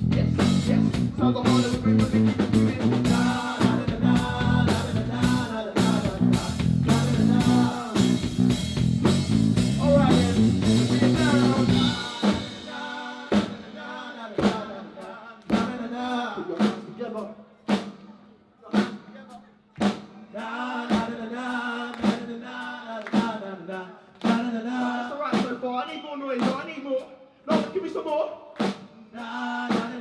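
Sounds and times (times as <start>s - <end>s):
live band music: 0.0s - 13.6s.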